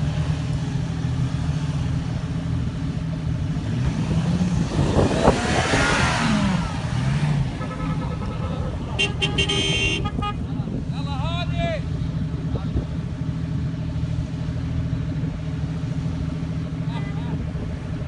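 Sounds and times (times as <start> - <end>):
engine revving: 0.0 - 10.7.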